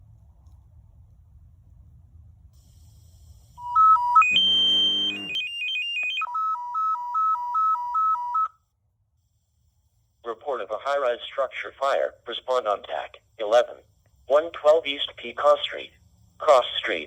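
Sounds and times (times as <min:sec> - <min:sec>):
harsh buzzing tone: 0:02.6 - 0:05.5.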